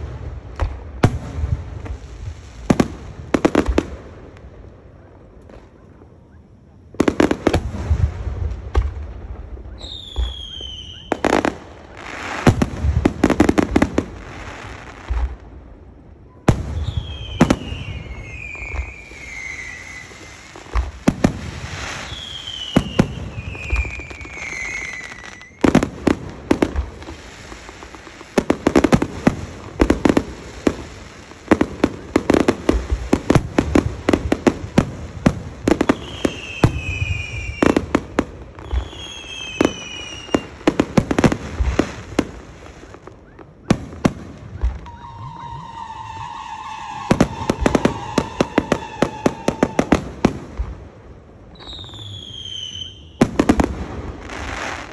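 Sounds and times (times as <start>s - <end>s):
fireworks bangs and crackling: 0.0s - 54.9s
falling firework whistles: 5.0s - 15.4s, 16.0s - 50.7s, 51.5s - 54.9s.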